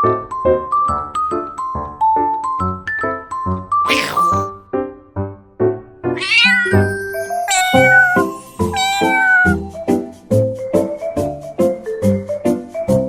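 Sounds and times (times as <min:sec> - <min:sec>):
cat meowing: 0:03.9 - 0:04.5, 0:06.2 - 0:09.6.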